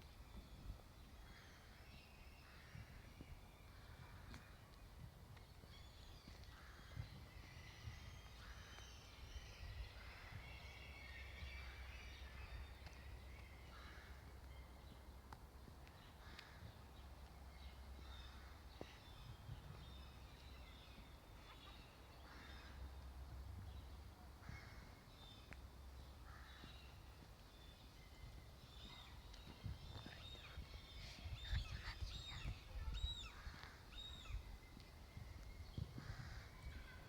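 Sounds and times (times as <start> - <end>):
high arching bird chirps: 28.2 - 35.9
faint bird calls: 28.2 - 37.0.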